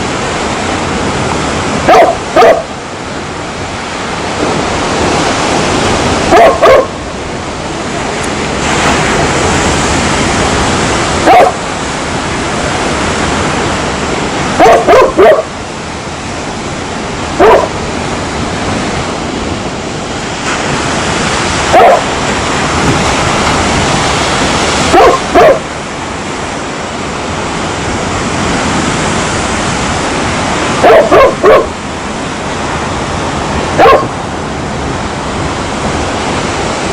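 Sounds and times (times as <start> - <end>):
dog barking: 1.8 - 2.7, 6.3 - 7.0, 11.2 - 11.6, 14.6 - 15.5, 17.4 - 17.8, 21.7 - 22.1, 24.9 - 25.7, 30.8 - 31.7, 33.8 - 34.2.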